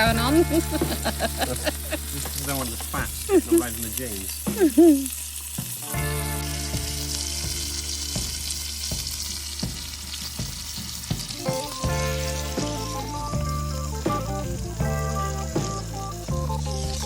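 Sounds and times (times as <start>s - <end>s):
background music: 0.0s - 3.7s, 5.8s - 9.3s, 11.2s - 17.0s
burgers sizzling in a pan: 0.0s - 17.0s.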